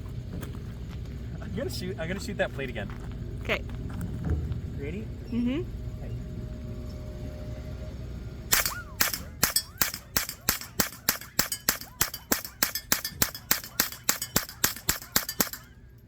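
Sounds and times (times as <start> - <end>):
rifle shots: 8.5 - 15.7
whining ricochets: 8.5 - 15.8.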